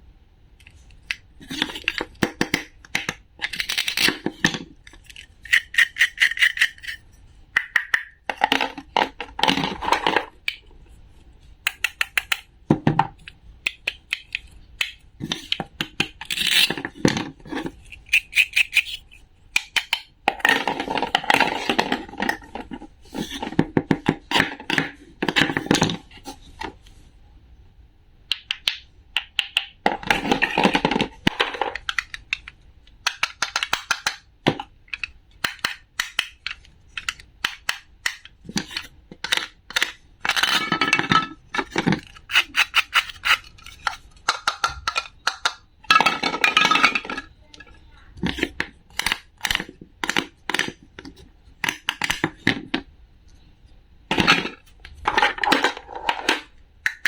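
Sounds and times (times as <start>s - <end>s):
small hard objects clicking: 5.0s - 7.0s
noisy handling sounds: 29.8s - 57.0s.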